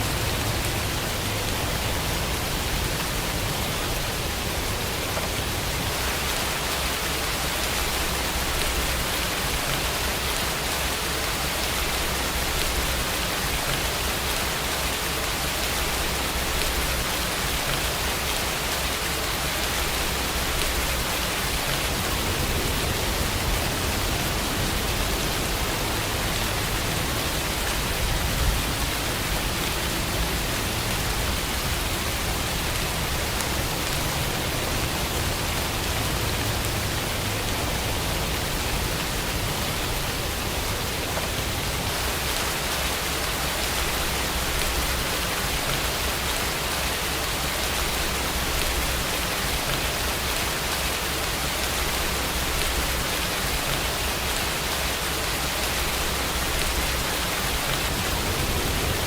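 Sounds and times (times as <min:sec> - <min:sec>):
steady rain hiss: 0:00.0 - 0:59.0
low rumble: 0:20.7 - 0:27.2, 0:57.6 - 0:59.0.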